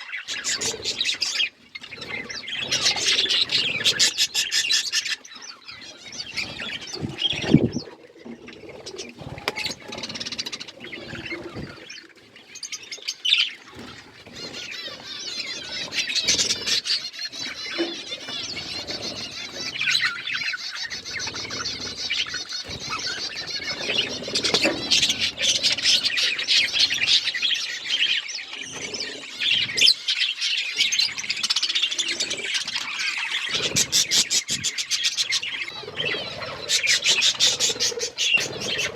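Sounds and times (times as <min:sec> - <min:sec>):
birds chirping and chattering: 0:00.0 - 0:38.9.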